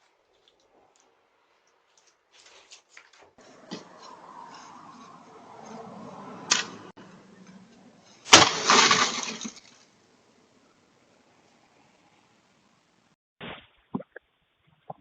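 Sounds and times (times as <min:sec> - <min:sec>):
sharp crack: 0:06.4 - 0:07.0, 0:08.2 - 0:10.0
loud rattling crash: 0:08.3 - 0:09.8.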